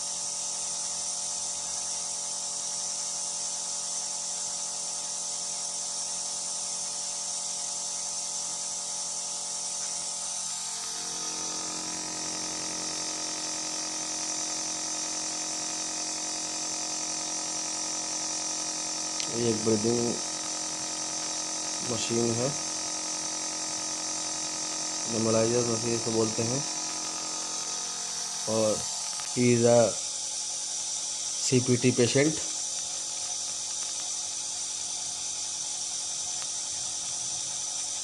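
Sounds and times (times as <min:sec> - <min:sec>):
nebulizer motor hum: 0:00.0 - 0:38.0
hiss of air and mist: 0:23.9 - 0:38.0.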